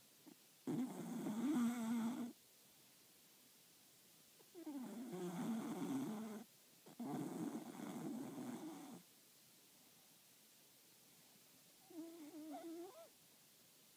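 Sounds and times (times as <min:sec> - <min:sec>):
dog snoring: 0:00.6 - 0:02.4, 0:04.5 - 0:09.0, 0:11.8 - 0:13.1.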